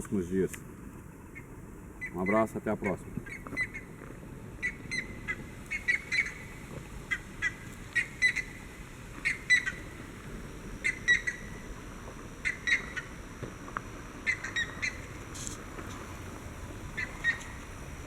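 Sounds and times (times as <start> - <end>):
steady low hiss: 0.0 - 18.0
high animal chirps: 17.0 - 17.6.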